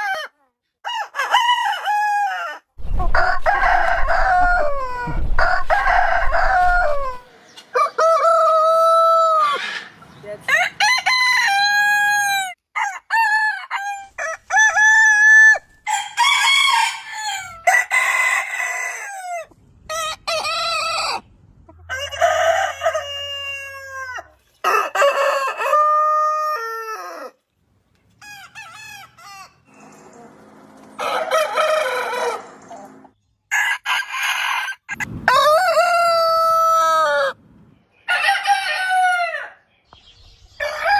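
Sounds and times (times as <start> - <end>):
rooster crowing: 0.0 - 9.9, 10.5 - 21.2, 21.9 - 27.4, 31.0 - 32.8, 33.5 - 37.4, 38.1 - 39.6, 40.6 - 40.9.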